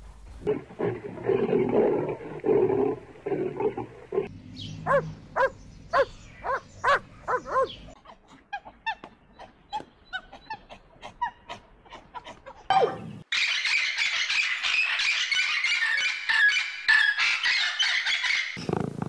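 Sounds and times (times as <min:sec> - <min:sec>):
animal yelping calls: 0:04.8 - 0:08.7.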